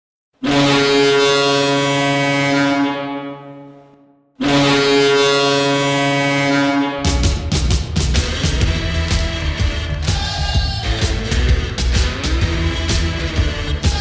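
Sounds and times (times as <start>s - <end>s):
low goal horn blasts: 0.4s - 10.1s.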